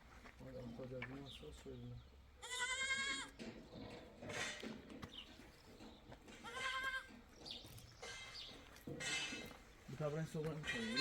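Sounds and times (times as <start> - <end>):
livestock bleating: 2.4 - 3.4, 6.4 - 7.1, 10.7 - 11.0.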